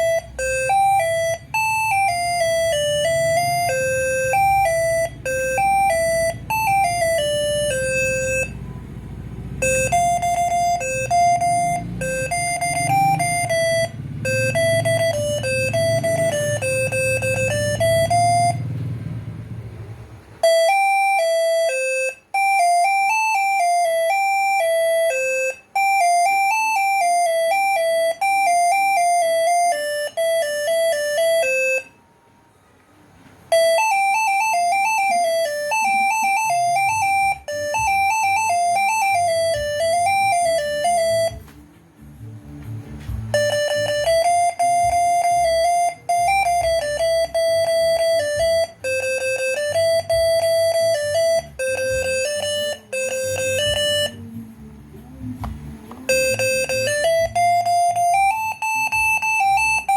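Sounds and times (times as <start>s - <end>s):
horn playing stepped melody: 0.0s - 19.0s, 33.3s - 54.4s, 55.5s - 59.9s.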